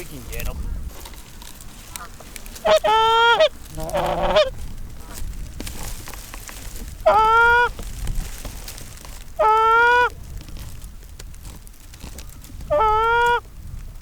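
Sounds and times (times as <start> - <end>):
goose honking: 1.9 - 5.2, 7.0 - 7.7, 9.4 - 10.1, 12.7 - 13.4.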